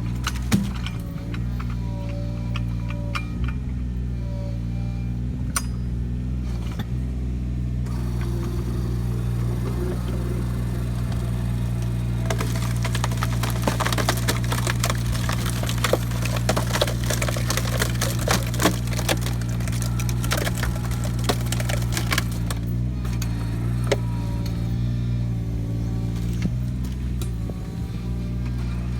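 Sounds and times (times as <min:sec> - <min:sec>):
wood cracking and splintering: 0:00.0 - 0:03.0, 0:07.9 - 0:28.9
diesel engine running: 0:00.0 - 0:28.9.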